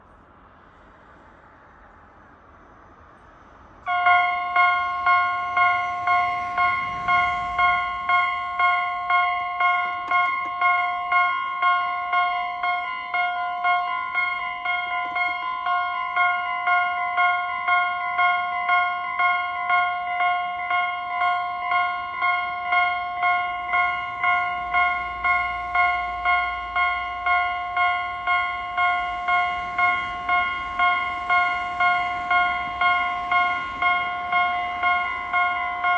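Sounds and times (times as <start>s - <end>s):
level-crossing warning bell clanging: 3.8s - 35.9s.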